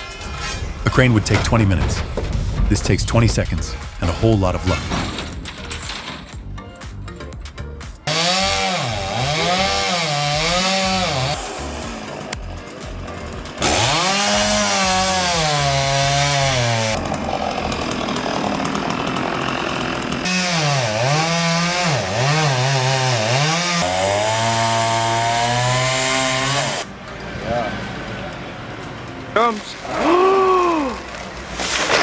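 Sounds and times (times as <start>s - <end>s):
chainsaw engine revving: 8.0s - 26.9s.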